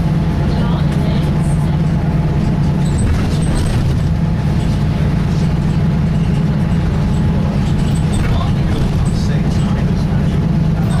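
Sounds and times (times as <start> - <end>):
bus engine droning: 0.0 - 11.0
bodywork rattles: 2.7 - 10.2.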